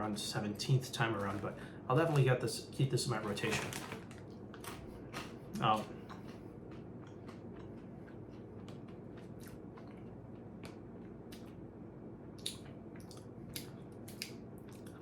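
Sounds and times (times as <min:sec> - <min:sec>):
person chewing crunchy snacks: 0:04.6 - 0:11.6, 0:12.4 - 0:15.0.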